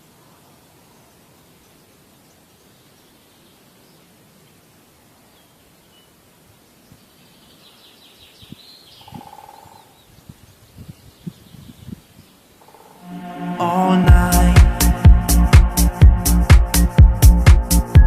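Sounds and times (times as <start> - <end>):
faint outdoor ambience: 0.0 - 18.0
bird chirps: 7.0 - 13.1
music: 13.0 - 18.0
soft low thumps: 14.1 - 18.0.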